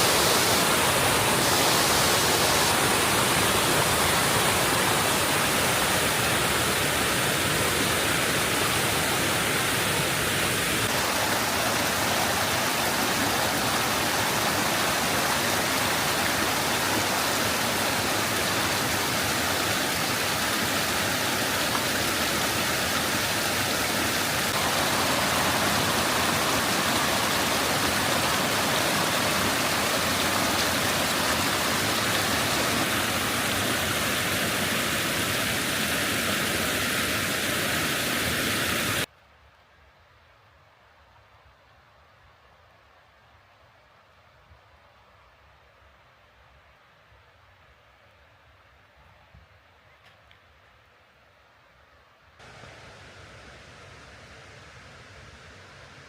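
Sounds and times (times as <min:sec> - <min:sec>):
waterfall rushing: 0:00.0 - 0:39.1, 0:52.4 - 0:56.0.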